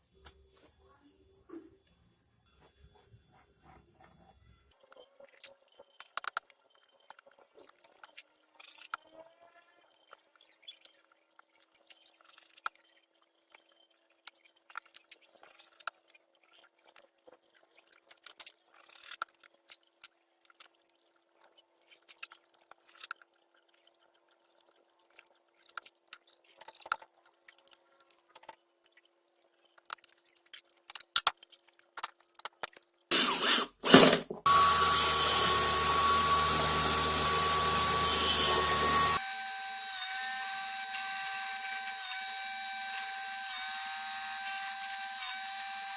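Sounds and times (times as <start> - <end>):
power tool whining: 33.1 - 45.9.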